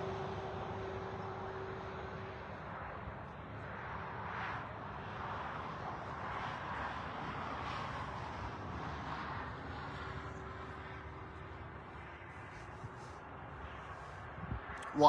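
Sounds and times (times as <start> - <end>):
vehicle passing on road: 0.0 - 15.0.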